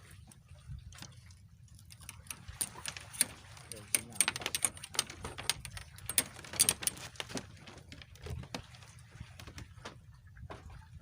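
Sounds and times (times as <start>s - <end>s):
sharp clicks and knocks: 1.9s - 8.6s.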